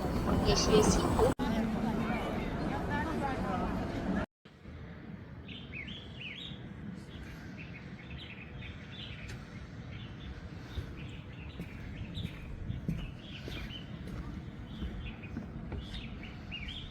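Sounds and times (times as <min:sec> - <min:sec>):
small birds chirping: 0:05.4 - 0:16.9.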